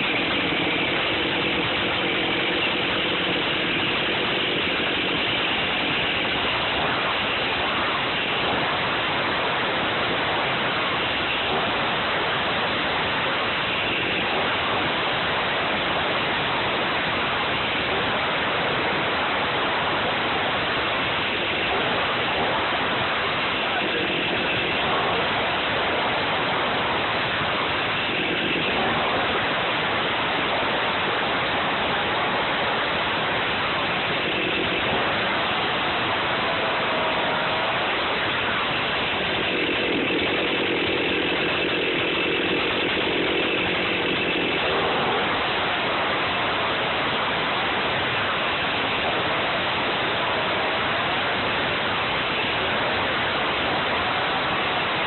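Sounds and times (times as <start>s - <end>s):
chainsaw cutting wood: 39.1s - 45.0s.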